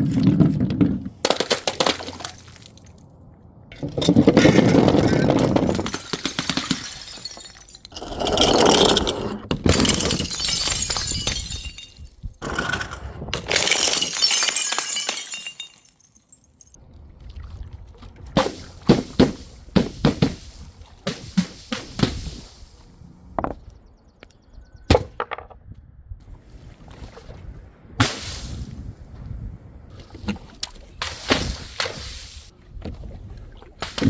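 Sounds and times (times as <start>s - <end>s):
glass shattering: 5.4s - 9.0s, 9.6s - 12.3s, 13.4s - 16.8s.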